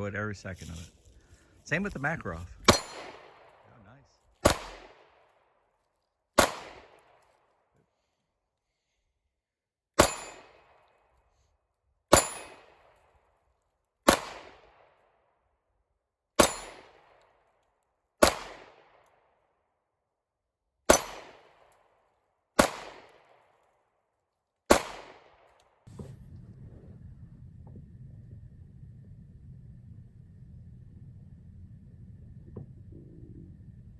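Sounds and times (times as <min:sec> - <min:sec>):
pistol shots with echo: 0:02.6 - 0:03.6, 0:04.4 - 0:05.2, 0:06.4 - 0:07.1, 0:10.0 - 0:10.7, 0:14.1 - 0:14.8, 0:16.4 - 0:17.2, 0:18.2 - 0:19.0, 0:20.9 - 0:21.7, 0:22.6 - 0:23.5, 0:24.7 - 0:25.5.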